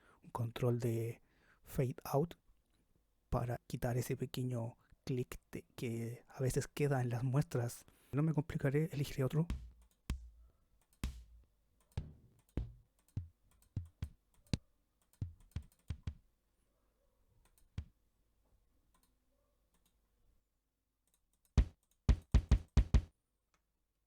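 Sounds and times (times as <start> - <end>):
kick drum hits: 9.5 - 11.4, 12.0 - 14.2, 15.2 - 16.2, 21.6 - 23.1.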